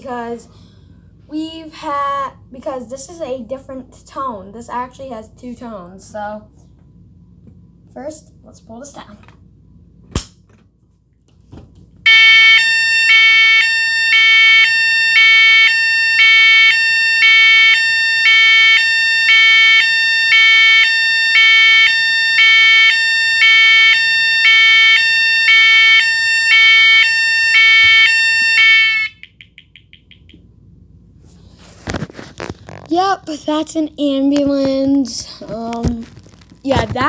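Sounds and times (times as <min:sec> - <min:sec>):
two-tone fire alarm: 0:12.1 - 0:30.3.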